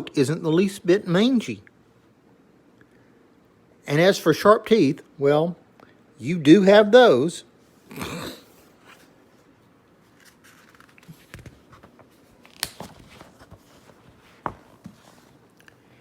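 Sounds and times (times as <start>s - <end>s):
paper pages rustling: 10.0s - 15.7s.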